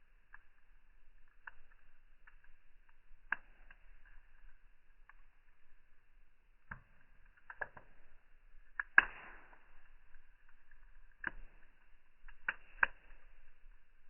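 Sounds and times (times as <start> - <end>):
wood fire crackling slowed down: 0.0 - 14.0.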